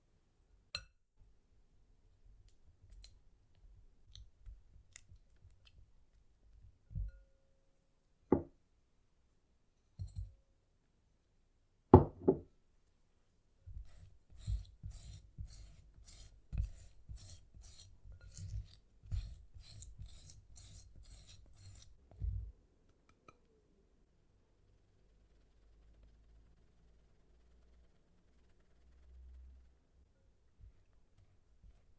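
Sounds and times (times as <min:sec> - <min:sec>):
utensil scraping bowl: 0:13.7 - 0:22.4.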